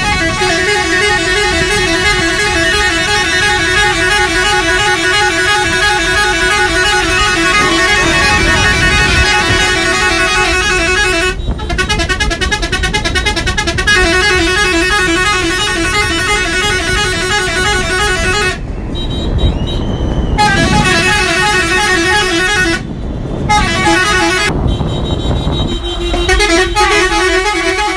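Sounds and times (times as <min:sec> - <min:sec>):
air horns honking: 0:00.0 - 0:27.9
traffic rumble: 0:00.0 - 0:27.9.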